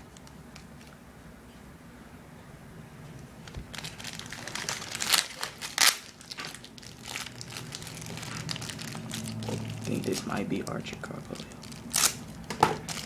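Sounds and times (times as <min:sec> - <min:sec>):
plastic packaging crinkling: 0:03.5 - 0:13.0.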